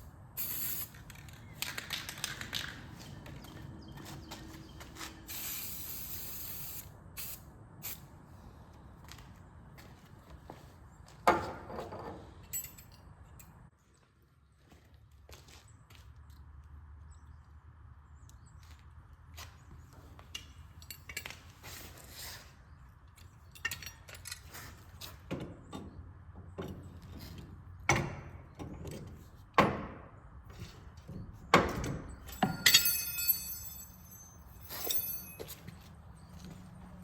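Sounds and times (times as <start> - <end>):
ringing metallic clatter: 31.8 - 35.8.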